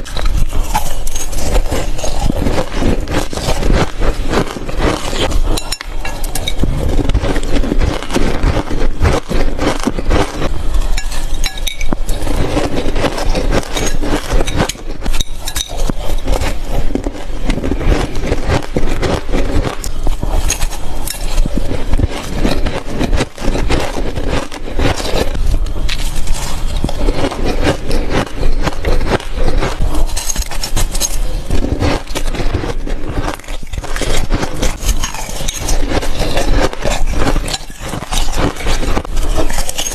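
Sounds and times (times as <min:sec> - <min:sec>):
ice crunching in mouth: 0:00.0 - 0:39.9.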